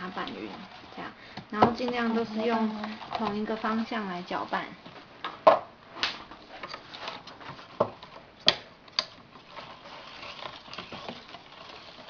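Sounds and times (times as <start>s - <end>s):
utensil scraping bowl: 0.0s - 4.3s, 9.3s - 12.0s.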